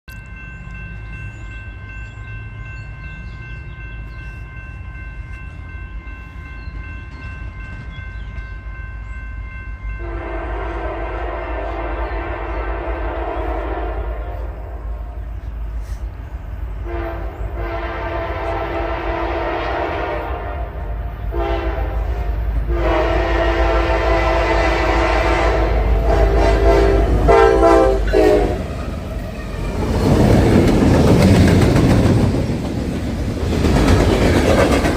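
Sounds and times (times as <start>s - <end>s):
train rumble and wheel clatter: 0.1s - 34.9s
locomotive air horn blasts: 10.0s - 15.2s, 16.8s - 28.7s.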